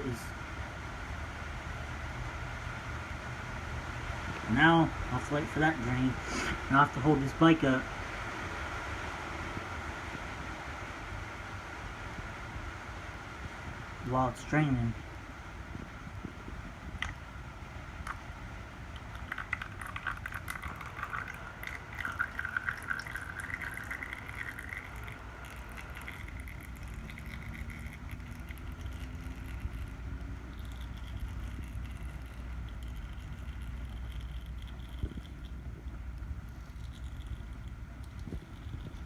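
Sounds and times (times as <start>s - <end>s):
low steady hum: 0.0s - 39.0s
oil trickling onto floor: 18.9s - 35.6s.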